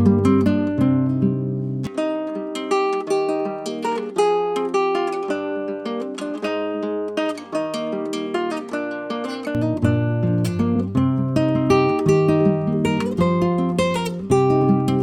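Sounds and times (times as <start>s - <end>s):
acoustic guitar plucked notes: 0.0s - 15.0s.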